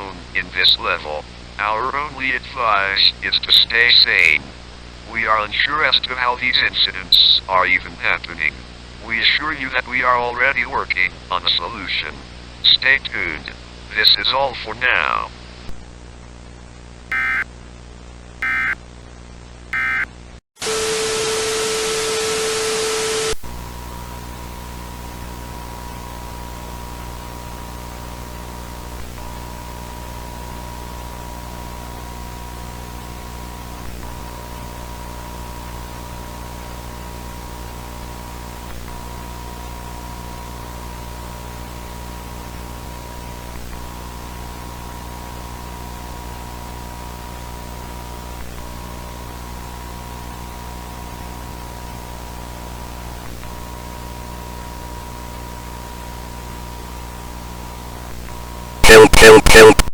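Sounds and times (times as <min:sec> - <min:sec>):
continuous high test tone: 0:17.1 - 0:17.4, 0:18.4 - 0:18.8, 0:19.8 - 0:20.1
hiss of static: 0:17.1 - 0:17.4, 0:20.6 - 0:59.9.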